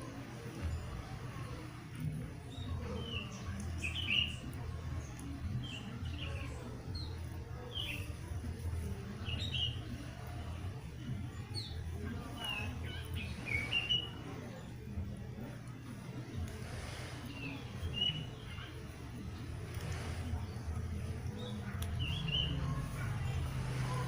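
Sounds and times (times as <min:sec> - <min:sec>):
small birds chirping: 0:00.0 - 0:24.0.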